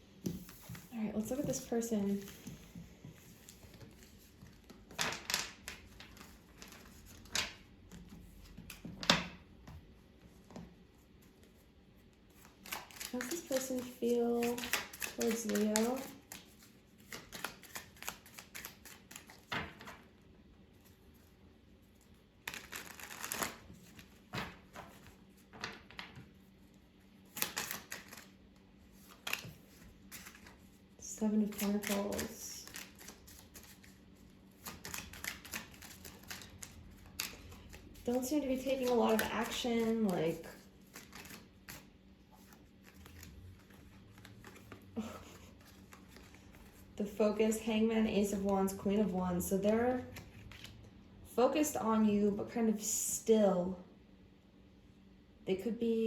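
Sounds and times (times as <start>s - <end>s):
cards being shuffled: 12.3s - 20.0s, 22.1s - 26.3s, 27.3s - 30.8s, 31.4s - 46.9s.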